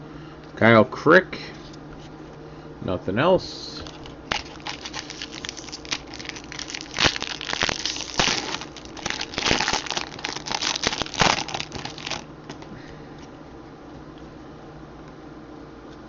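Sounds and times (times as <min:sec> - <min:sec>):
foil wrapper crinkling: 0:03.8 - 0:12.7.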